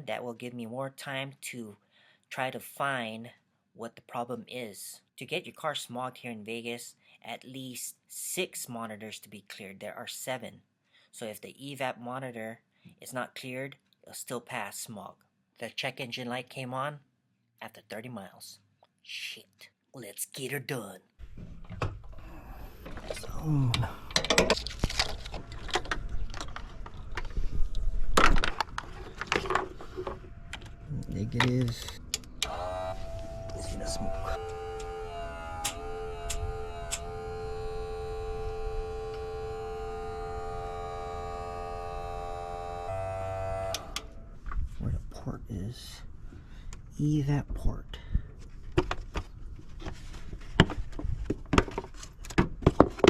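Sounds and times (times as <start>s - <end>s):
tools clattering and knocking: 24.1s - 27.4s, 28.2s - 30.7s, 50.4s - 53.0s.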